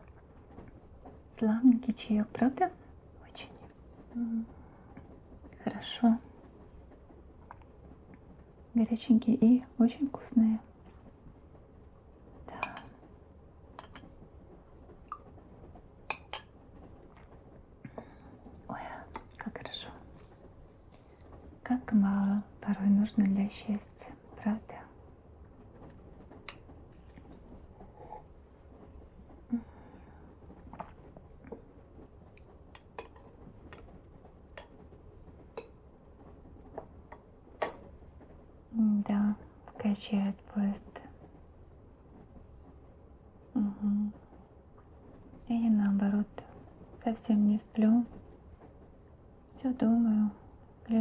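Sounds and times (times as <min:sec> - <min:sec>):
faint background hum: 0:00.0 - 0:51.0
mouth chewing and sipping: 0:30.6 - 0:31.6.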